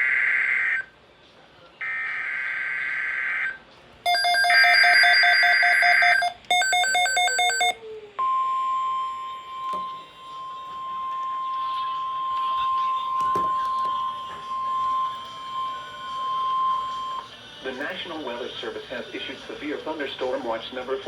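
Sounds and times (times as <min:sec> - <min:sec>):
steady warning alarm tone: 0:04.1 - 0:17.3.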